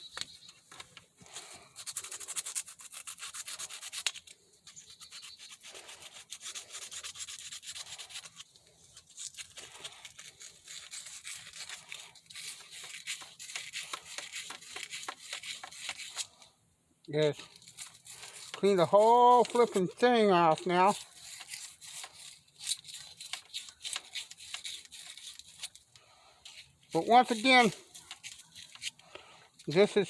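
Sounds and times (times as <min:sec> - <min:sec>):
abrasive scrubbing on soldering iron: 0:17.3 - 0:25.8, 0:26.4 - 0:29.0.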